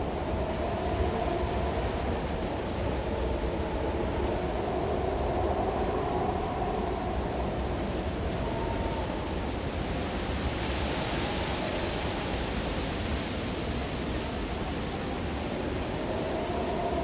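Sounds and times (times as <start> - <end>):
rushing mountain wind: 0.0 - 17.0
faint wavering whistle: 0.1 - 9.9, 15.9 - 17.0.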